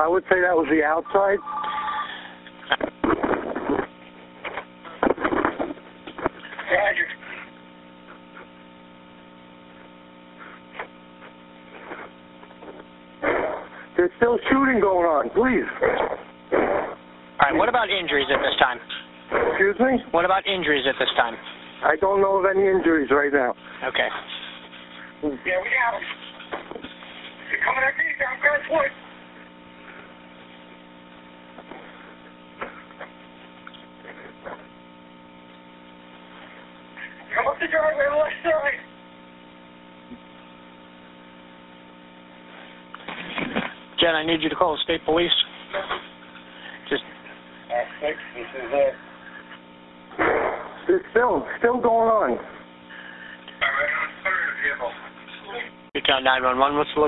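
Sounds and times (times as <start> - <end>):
telephone line hum and hiss: 0.0 - 57.0.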